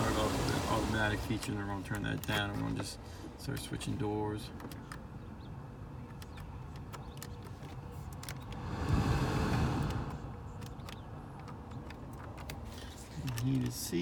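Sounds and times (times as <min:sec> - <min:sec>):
brief rushing swell: 0:08.6 - 0:10.2.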